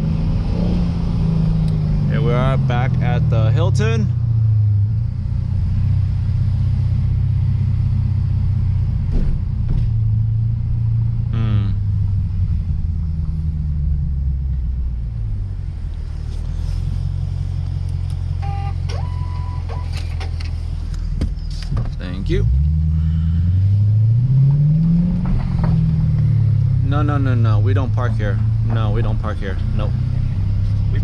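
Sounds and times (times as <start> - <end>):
car engine rumbling: 0.0 - 31.0
electronic beeps: 18.4 - 20.0.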